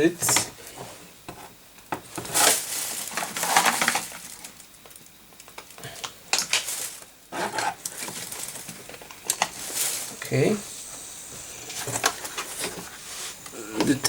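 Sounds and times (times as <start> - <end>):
metal objects clattering and scraping: 2.2 - 4.6.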